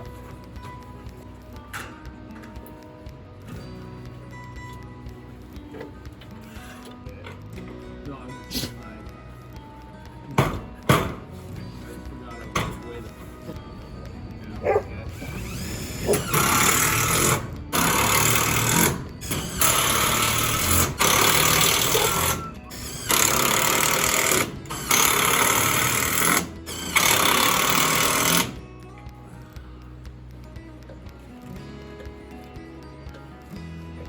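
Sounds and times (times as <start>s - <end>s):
power driver screwing into metal: 15.1s - 28.6s.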